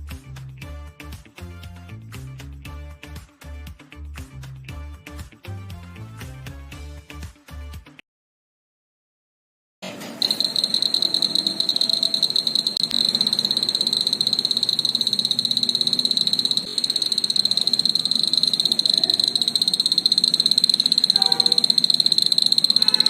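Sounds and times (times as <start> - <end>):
shrill electronic insect chirp: 10.2 - 23.0.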